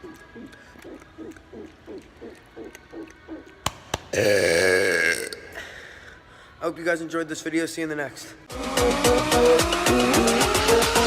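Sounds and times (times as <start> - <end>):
man burping: 4.1 - 5.8.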